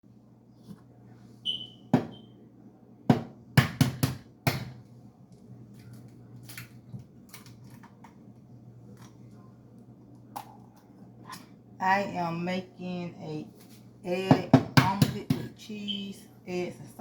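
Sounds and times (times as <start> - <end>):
steady low hum: 0.1 - 17.0
short high electronic beep: 1.5 - 2.3.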